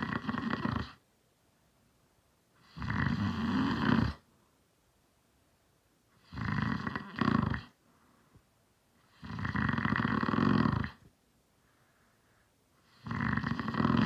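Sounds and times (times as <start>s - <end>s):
man snoring: 0.0s - 1.0s, 2.6s - 4.2s, 6.2s - 7.8s, 9.1s - 11.0s, 12.8s - 14.0s.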